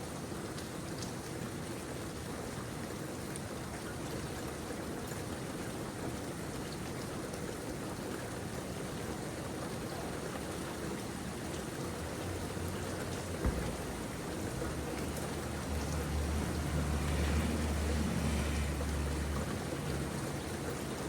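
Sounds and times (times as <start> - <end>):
steady rain falling: 0.0 - 21.0
sharp knock: 13.4 - 14.0.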